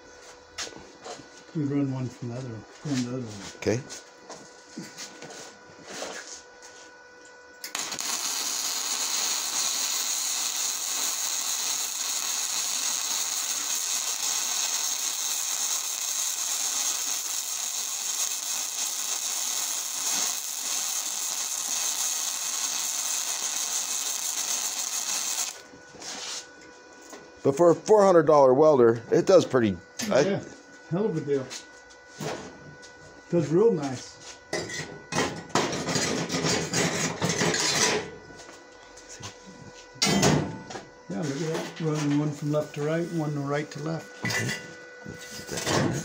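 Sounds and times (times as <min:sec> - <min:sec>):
welding arc hissing: 0:07.6 - 0:25.7.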